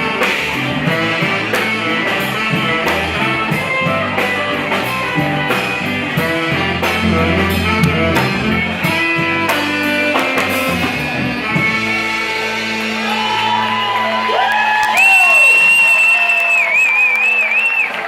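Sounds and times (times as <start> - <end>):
live rock band: 0.0 - 18.0
drum strikes: 5.6 - 10.8.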